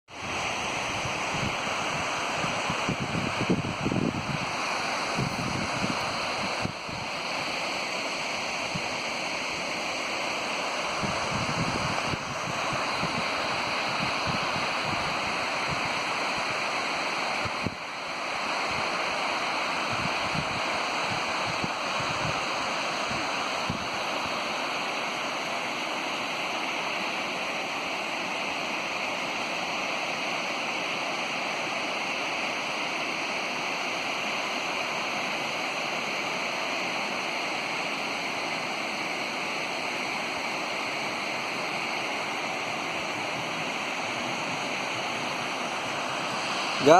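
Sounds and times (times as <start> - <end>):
wind buffeting microphone: 0.2 - 4.5, 11.0 - 15.9
waterfall rushing: 37.8 - 46.9.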